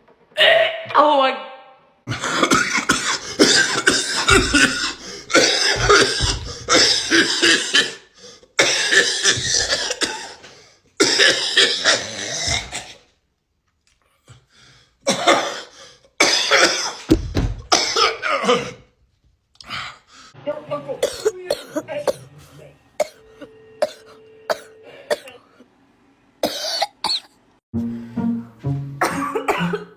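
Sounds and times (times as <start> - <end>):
person coughing: 2.1 - 12.7, 15.1 - 17.1, 17.7 - 18.8, 21.0 - 25.5, 26.4 - 27.3, 29.0 - 29.9.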